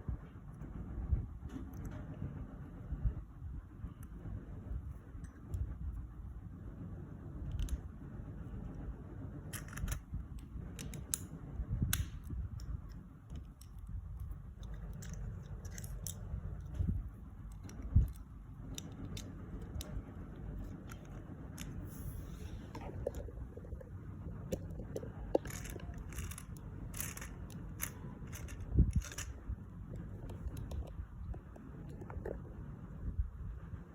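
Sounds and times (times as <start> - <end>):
low rumble of hands on pieces: 0.0 - 33.9
plastic bricks clicking: 9.5 - 11.3, 12.9 - 16.8, 24.5 - 29.4.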